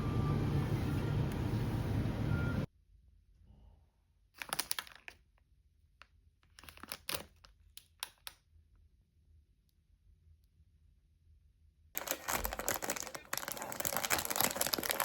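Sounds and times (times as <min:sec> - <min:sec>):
rustling and crinkling handling: 0:12.0 - 0:15.0.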